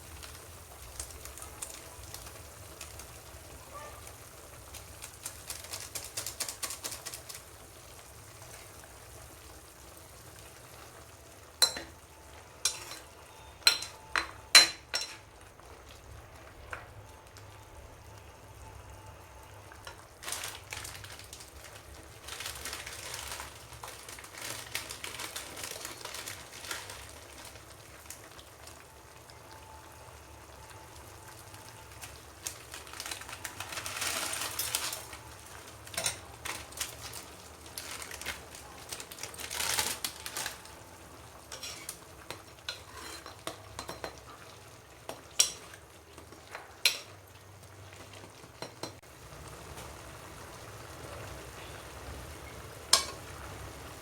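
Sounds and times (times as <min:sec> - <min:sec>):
metal utensil clinking on bowl: 0:11.6 - 0:12.0, 0:12.6 - 0:15.2.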